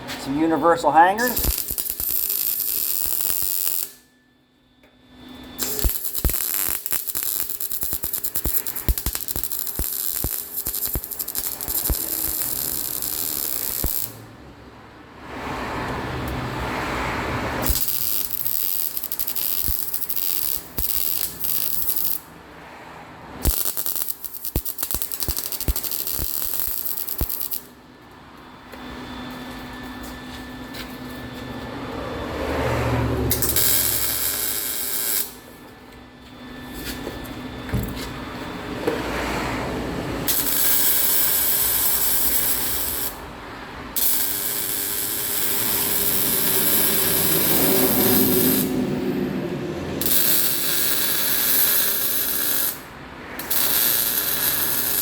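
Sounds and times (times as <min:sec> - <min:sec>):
welder crackling and spitting: 0:00.2 - 0:04.0, 0:05.6 - 0:14.2, 0:17.6 - 0:22.2, 0:23.4 - 0:27.7, 0:33.4 - 0:35.4, 0:40.3 - 0:43.2, 0:44.0 - 0:48.7, 0:53.4 - 0:55.0.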